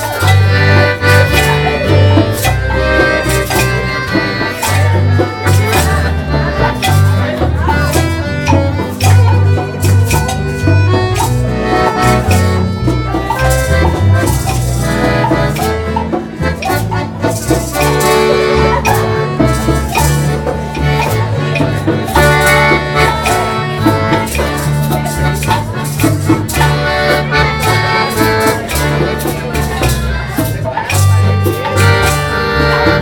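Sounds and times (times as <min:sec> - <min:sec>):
accordion melody: 0:00.0 - 0:33.0
guitar: 0:00.0 - 0:33.0
maracas: 0:00.0 - 0:33.0.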